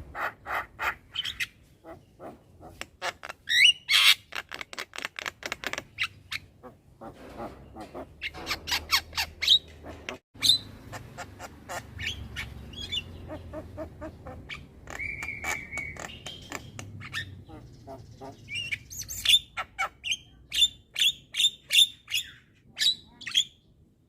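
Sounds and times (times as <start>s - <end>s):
bird harsh squawk: 0.1s - 4.2s, 6.3s - 20.3s
bird chattering clicks: 2.7s - 6.4s, 14.3s - 19.6s.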